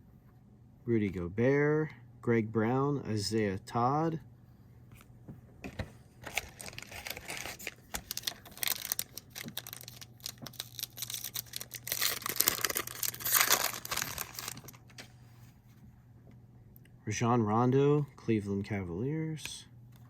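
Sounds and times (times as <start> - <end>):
foil wrapper ripping: 6.2 - 15.0
foil wrapper crinkling: 6.2 - 15.1.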